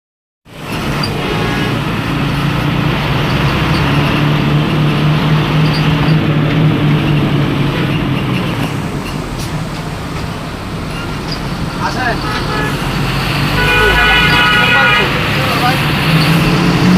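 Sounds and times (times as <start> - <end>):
road and wind noise: 0.4 - 16.9
bus engine droning: 0.5 - 16.9.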